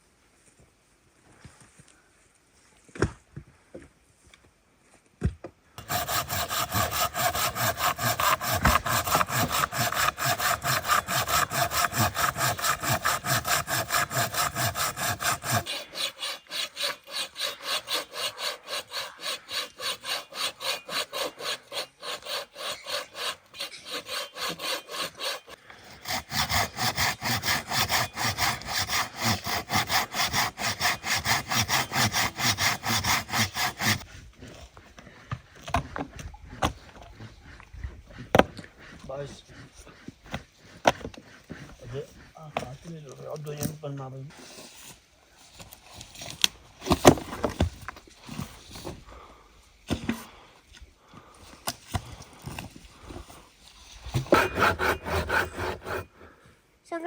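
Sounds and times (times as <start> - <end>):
back-and-forth rasping strokes: 5.8 - 34.1, 51.6 - 56.3.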